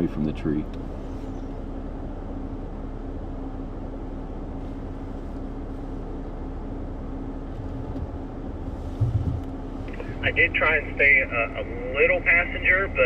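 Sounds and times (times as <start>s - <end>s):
engine idling: 0.0s - 13.0s.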